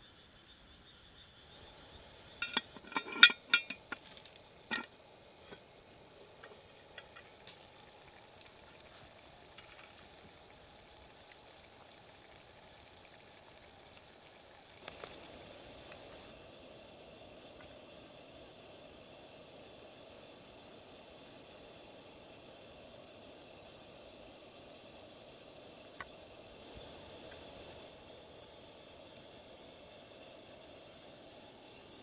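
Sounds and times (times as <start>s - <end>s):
faint sizzle: 0.0s - 32.0s
cookware clinking: 2.4s - 4.0s
small ticks: 14.8s - 16.4s.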